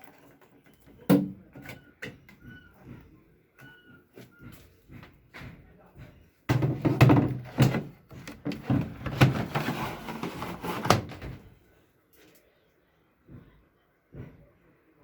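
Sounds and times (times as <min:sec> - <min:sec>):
sharp knocks and clattering bumps: 0:04.4 - 0:11.5.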